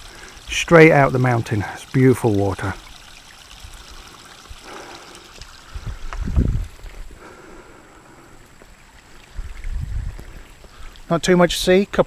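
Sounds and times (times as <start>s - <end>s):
spring water trickling: 0.0s - 12.0s.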